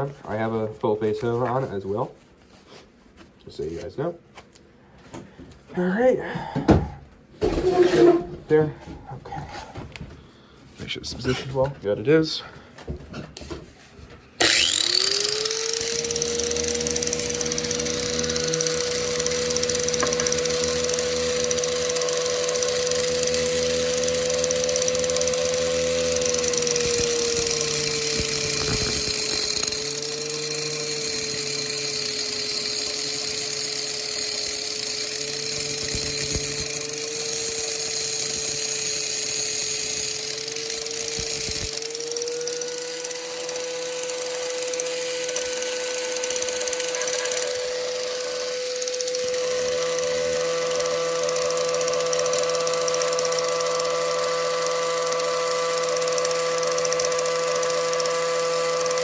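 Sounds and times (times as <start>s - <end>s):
angle grinder whine: 14.4s - 59.0s.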